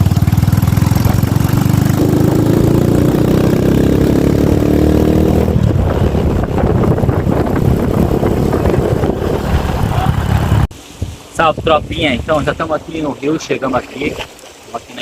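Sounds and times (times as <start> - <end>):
motorcycle engine running: 0.0 - 10.7.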